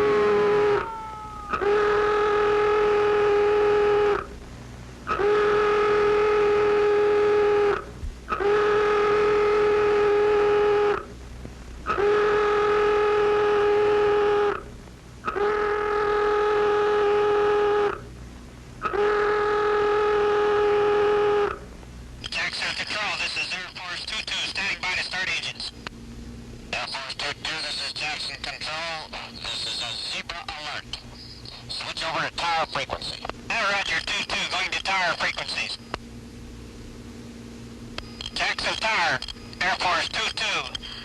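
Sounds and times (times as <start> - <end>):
alert klaxon blasts: 5.1 - 11.0.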